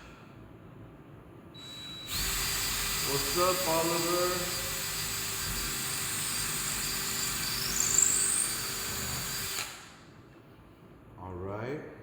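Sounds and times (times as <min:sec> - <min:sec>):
power drill whining: 0:01.6 - 0:10.0.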